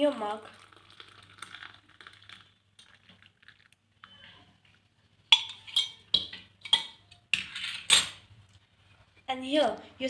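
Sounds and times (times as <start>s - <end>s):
tea trickling into a mug: 0.2s - 3.9s
dishes clinking: 5.3s - 8.2s.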